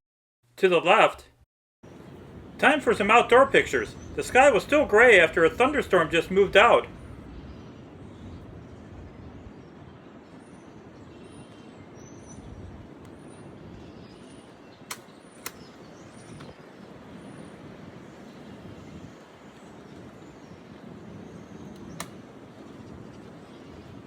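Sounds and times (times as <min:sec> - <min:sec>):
outdoor background noise: 0:00.5 - 0:24.0
sharp clicks: 0:14.8 - 0:16.6, 0:21.7 - 0:22.2.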